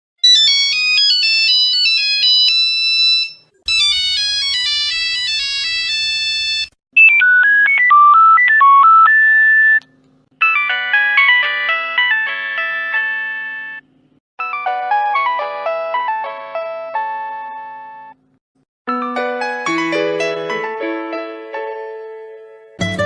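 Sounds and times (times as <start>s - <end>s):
phone ringtone melodies: 0.2s - 9.8s, 10.4s - 18.2s.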